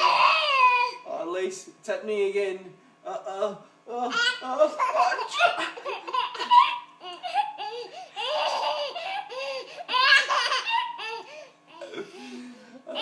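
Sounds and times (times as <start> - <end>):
baby laughing and squealing: 0.0 - 1.0, 4.1 - 11.9.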